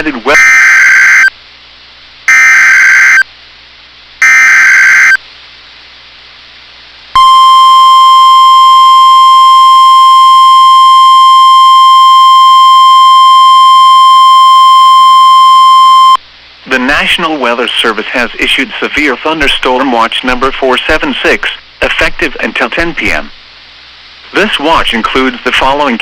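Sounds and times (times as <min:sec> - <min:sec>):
steady warning alarm tone: 0:00.4 - 0:01.3, 0:02.3 - 0:03.2, 0:04.2 - 0:05.2, 0:07.2 - 0:16.2
harsh warbling data bursts: 0:04.2 - 0:05.2.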